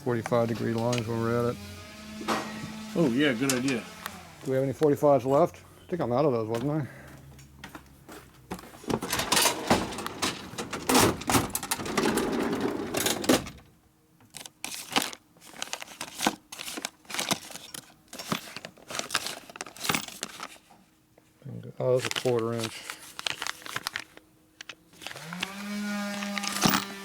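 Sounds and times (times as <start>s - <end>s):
rummaging through loose hardware: 0.1s - 1.2s, 8.5s - 13.6s, 14.3s - 20.7s, 21.9s - 27.0s.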